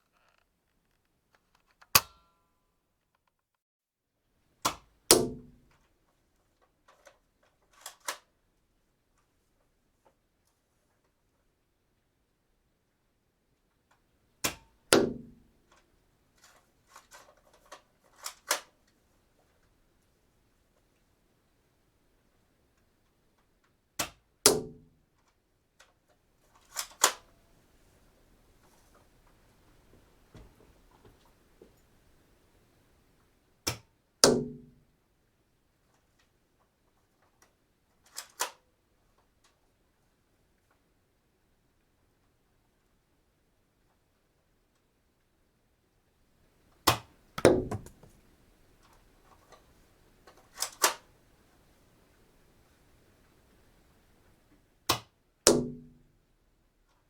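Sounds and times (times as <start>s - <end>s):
dart gun snaps: 46.9s - 48.1s.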